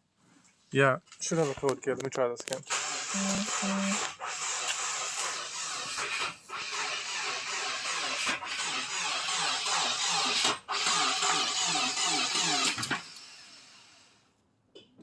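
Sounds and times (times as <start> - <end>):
starter motor cranking engine: 2.6 - 14.1.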